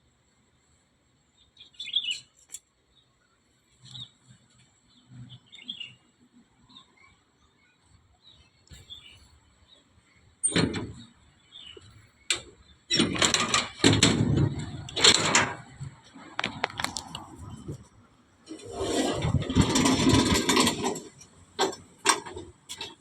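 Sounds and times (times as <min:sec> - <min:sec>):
metal door clunking and rattling: 0:10.4 - 0:16.6, 0:18.5 - 0:23.0.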